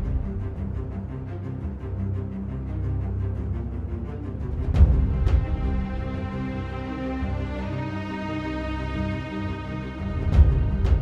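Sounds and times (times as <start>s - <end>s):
dark cinematic music: 0.0s - 11.0s.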